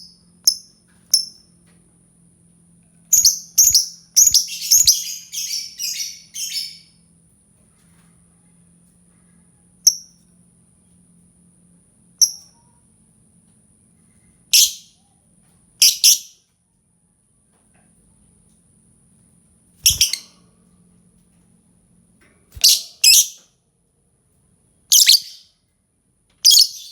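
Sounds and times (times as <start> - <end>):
lovebird shrill chirps: 3.1 - 6.8, 14.5 - 14.8, 15.8 - 16.3, 19.8 - 20.3, 22.6 - 23.4, 24.9 - 25.5, 26.4 - 26.9.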